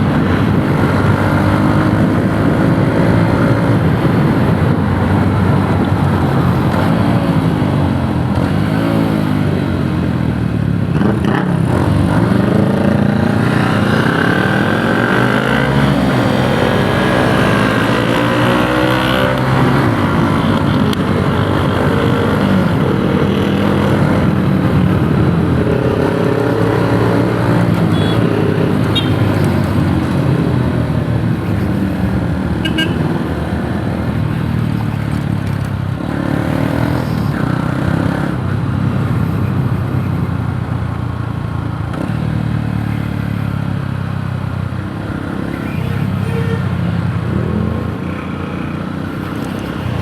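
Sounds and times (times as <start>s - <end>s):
motorcycle engine revving: 11.0s - 30.6s.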